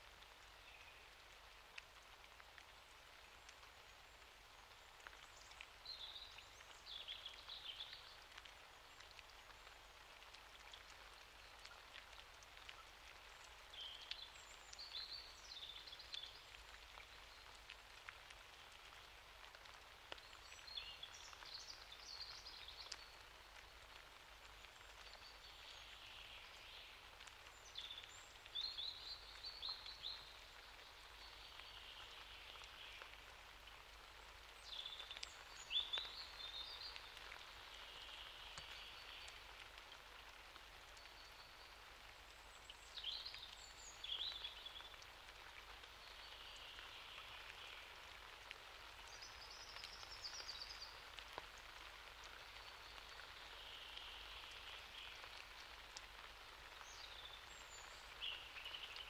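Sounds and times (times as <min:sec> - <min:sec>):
light rain falling: 0:00.0 - 0:59.0.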